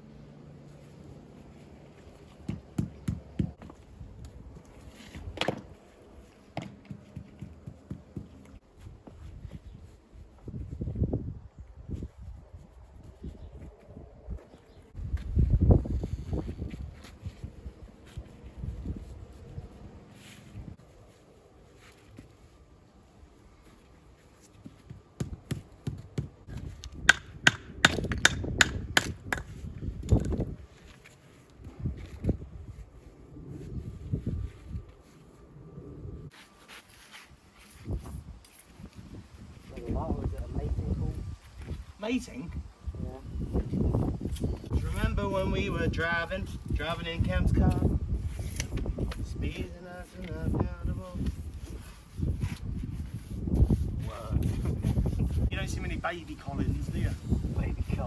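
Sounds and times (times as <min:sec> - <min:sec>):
sharp knocks and taps: 0:06.6 - 0:08.6.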